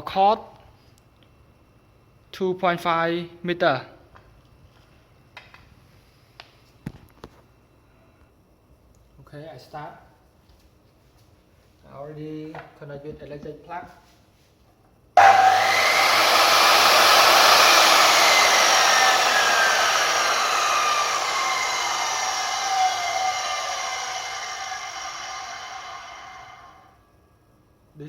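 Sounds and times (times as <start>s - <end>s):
circular saw whine spinning down: 15.2s - 27.0s.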